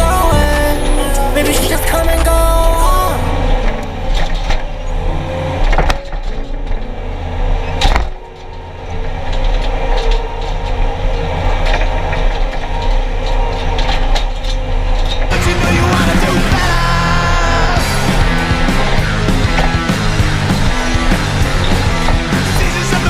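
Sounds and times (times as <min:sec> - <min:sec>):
skid steer engine running: 0:15.3 - 0:23.0.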